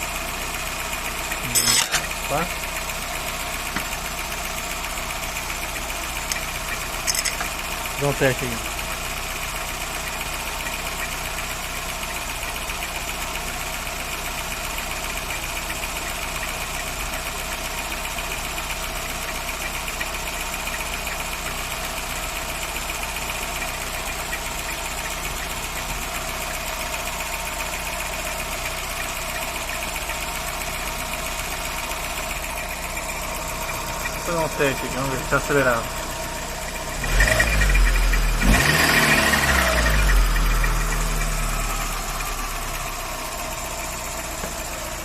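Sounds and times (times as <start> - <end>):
engine running with whine: 0.0 - 45.0.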